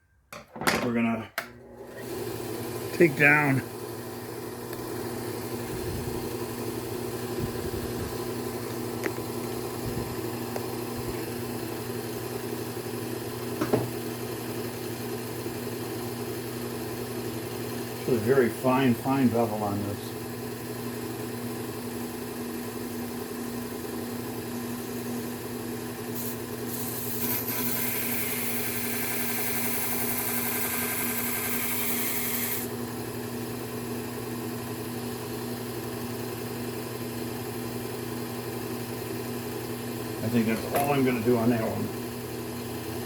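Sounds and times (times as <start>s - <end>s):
belt sharpener motor humming: 1.4s - 36.4s, 38.4s - 43.0s
scissor blade grinding on belt: 26.2s - 32.7s.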